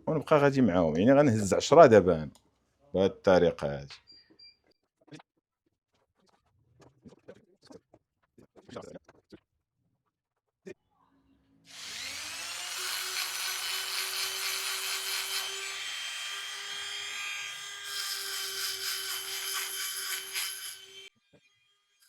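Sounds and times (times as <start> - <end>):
rotary tool whining and grinding: 11.7 - 22.0.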